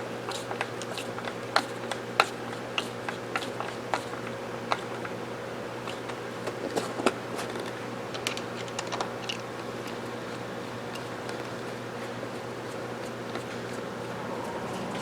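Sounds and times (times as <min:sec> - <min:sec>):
steady low hum: 0:13.0 - 0:15.0.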